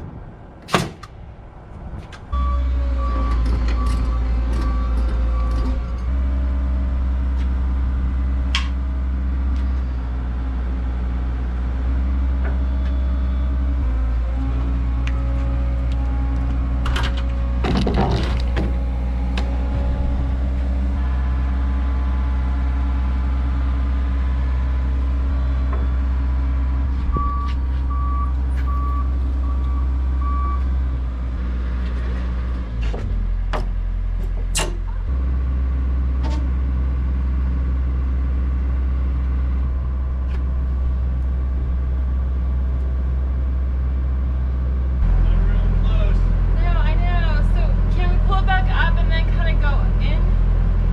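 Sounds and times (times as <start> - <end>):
heavy machine engine running: 1.5 - 50.9
backup alarm beeps: 27.2 - 30.7.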